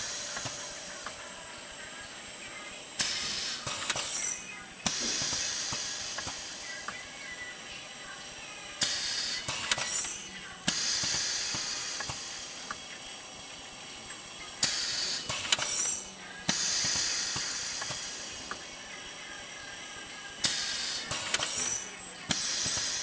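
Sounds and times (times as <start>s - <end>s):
sharp machine clicks: 0.0s - 1.2s, 3.0s - 7.6s, 8.8s - 12.9s, 14.1s - 18.6s, 20.3s - 23.0s
drilling machine hiss rushes: 0.0s - 1.8s, 2.9s - 23.0s.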